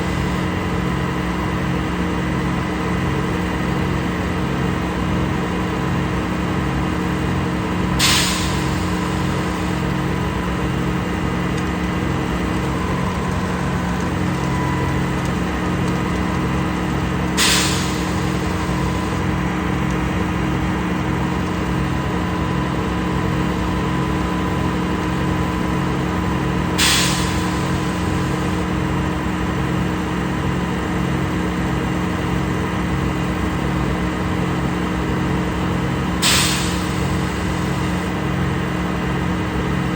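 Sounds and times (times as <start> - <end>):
concrete pump engine throbbing: 0.0 - 39.9
sharp hiss: 8.0 - 9.2, 17.4 - 18.8, 26.8 - 27.8, 36.2 - 37.3.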